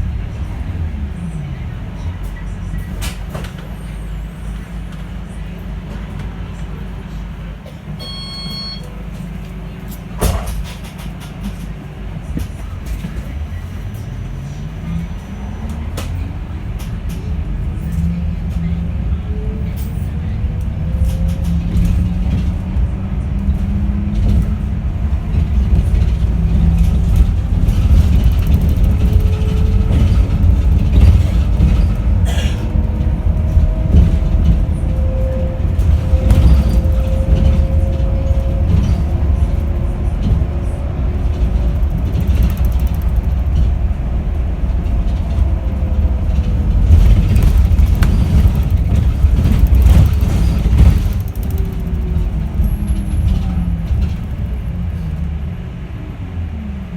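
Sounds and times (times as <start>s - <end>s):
low road rumble: 0.0s - 56.9s
electric bus motor whining: 12.0s - 56.2s.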